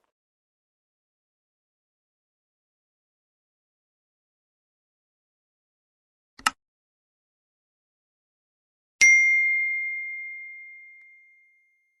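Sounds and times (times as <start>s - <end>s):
high bell ding: 9.0s - 12.0s.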